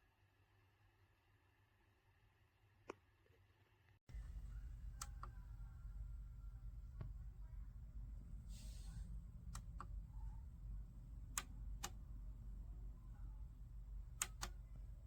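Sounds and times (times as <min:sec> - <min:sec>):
low steady hum: 0:04.1 - 0:15.0
faint sharp clicks: 0:14.2 - 0:14.7.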